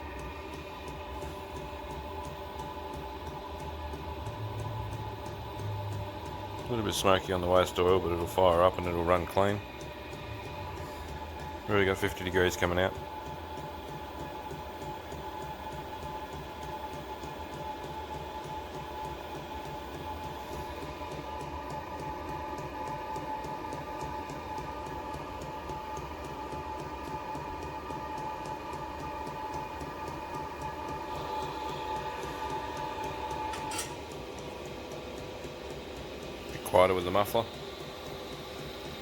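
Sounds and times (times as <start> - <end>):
pulsing combustion rumble: 0.0 - 13.5
heater blower whine: 0.0 - 39.0.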